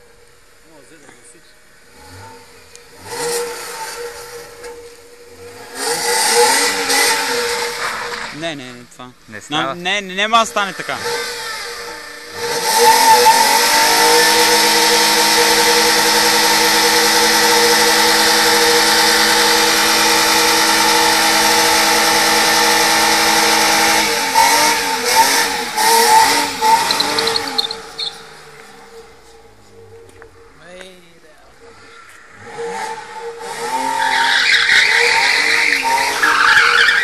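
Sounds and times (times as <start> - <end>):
car engine revving: 0.0 - 37.0
tyre squeal: 10.8 - 30.6, 31.5 - 37.0.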